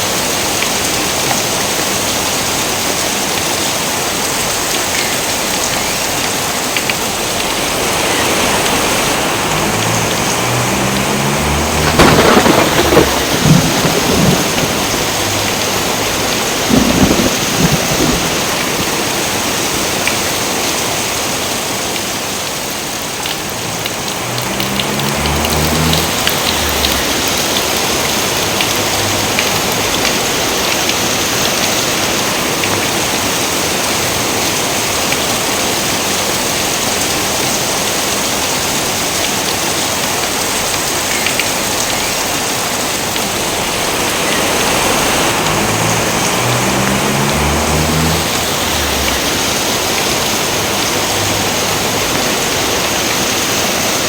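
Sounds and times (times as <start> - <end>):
steady rain falling: 0.0 - 54.0
thunder crack and rumble: 7.3 - 19.9, 23.5 - 31.0, 43.2 - 52.8.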